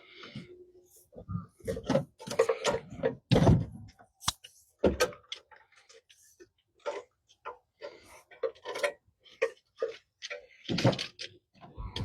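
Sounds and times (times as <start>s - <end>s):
hand tools and metal parts clunking: 1.6s - 4.0s, 4.8s - 12.0s.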